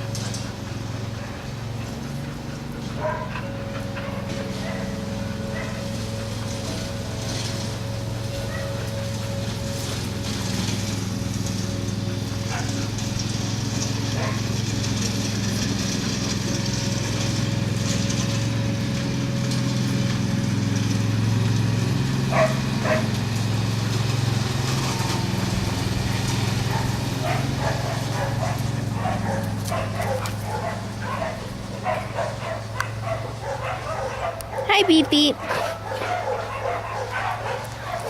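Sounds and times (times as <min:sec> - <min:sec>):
lawn mower engine running: 0:00.0 - 0:38.0
dog barking: 0:03.0 - 0:05.9, 0:08.5 - 0:08.8, 0:12.5 - 0:12.8, 0:14.2 - 0:14.4, 0:22.3 - 0:23.1, 0:26.6 - 0:38.0.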